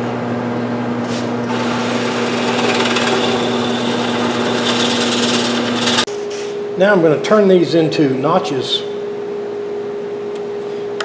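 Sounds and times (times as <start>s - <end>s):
power tool motor hum: 1.5s - 6.1s.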